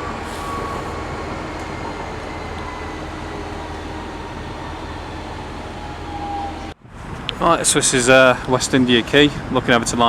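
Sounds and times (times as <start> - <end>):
train rumbling: 0.0 - 8.8.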